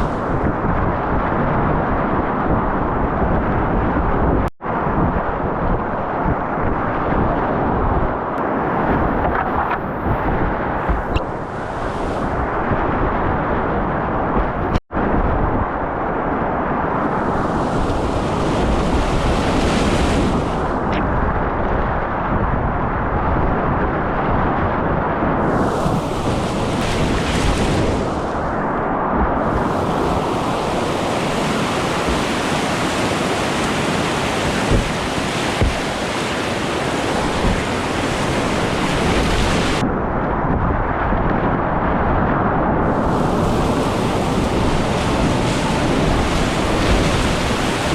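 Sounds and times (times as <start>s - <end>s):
whitewater roaring: 0.0s - 1.2s, 15.8s - 23.2s, 25.3s - 39.8s, 42.8s - 47.9s
wind buffeting microphone: 0.0s - 47.9s
dull low thumps: 8.8s - 11.5s.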